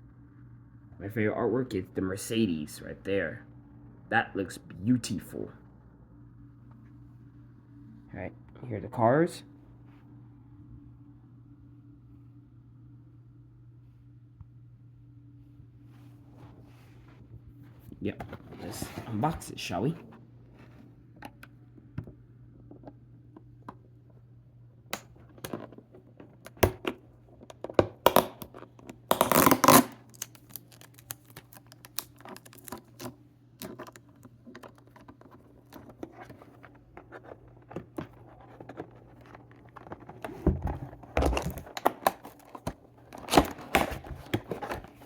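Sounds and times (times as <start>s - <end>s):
faint low hum: 0.0s - 45.0s
packaging being torn open: 28.1s - 34.0s
plastic rustling: 28.5s - 45.0s.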